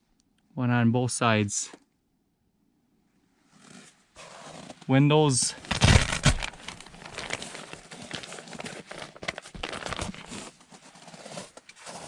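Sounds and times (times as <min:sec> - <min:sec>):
crunching footsteps: 0:05.5 - 0:12.0.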